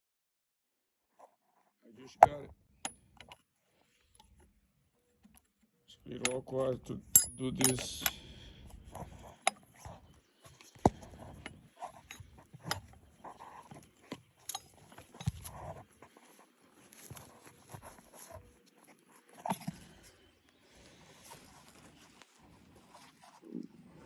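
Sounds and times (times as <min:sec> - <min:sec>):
wrench clicking on metal nuts: 0:07.2 - 0:08.2.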